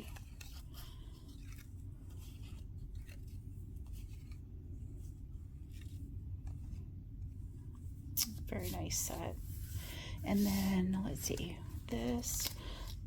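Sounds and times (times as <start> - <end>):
paper rustling: 0.0 - 7.2, 8.2 - 13.0
low room hum: 0.0 - 13.0.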